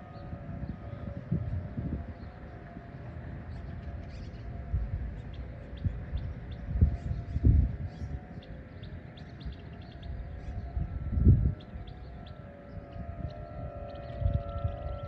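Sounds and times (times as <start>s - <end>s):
distant warning sirens wailing: 0.0s - 15.0s
birds chirping: 3.4s - 15.0s.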